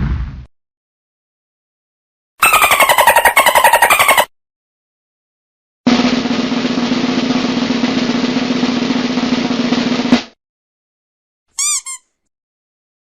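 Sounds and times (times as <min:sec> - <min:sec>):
sharp snare drum hit: 0:05.9 - 0:10.4
snare drum roll: 0:05.9 - 0:10.4.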